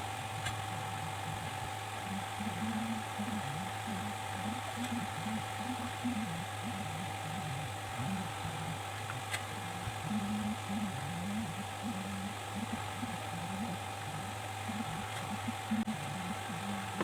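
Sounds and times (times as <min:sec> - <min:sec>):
faint muffled voices: 0:00.0 - 0:17.0
low electrical hum: 0:00.0 - 0:17.0.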